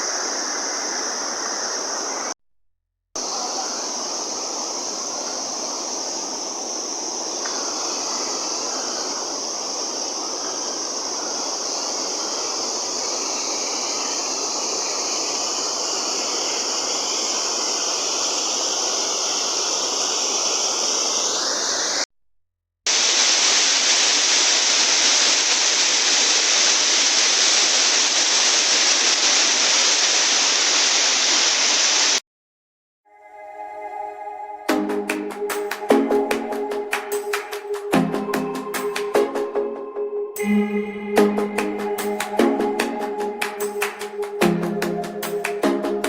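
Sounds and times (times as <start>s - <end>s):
waterfall rushing water: 0.0s - 2.4s, 3.2s - 22.0s, 22.9s - 32.2s, 34.7s - 39.6s, 40.4s - 46.0s.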